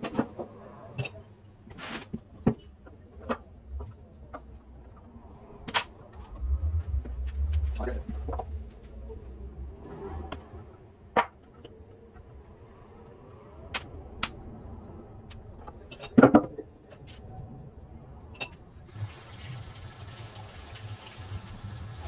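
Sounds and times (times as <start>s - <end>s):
washing machine filling with water: 18.9s - 22.0s.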